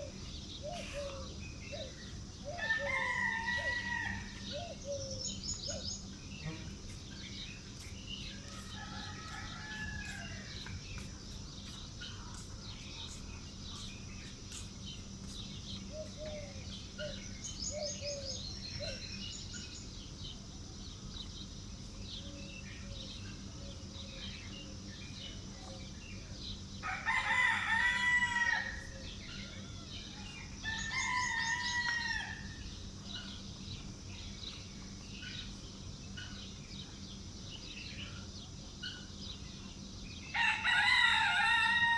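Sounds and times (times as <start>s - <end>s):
small birds chirping: 0.0s - 3.1s, 4.4s - 26.8s
rooster crowing: 2.6s - 4.4s, 8.5s - 10.5s, 26.8s - 29.0s, 30.6s - 32.5s, 40.3s - 41.9s.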